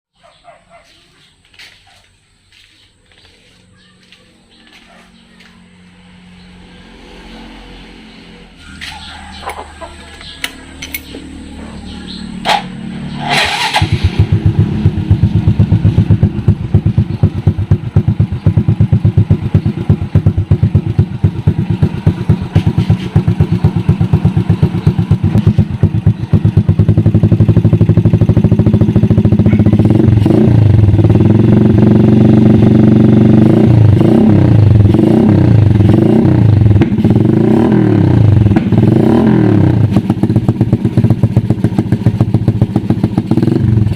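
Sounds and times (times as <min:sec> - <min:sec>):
motorcycle engine idling and revving: 0:00.2 - 0:43.9.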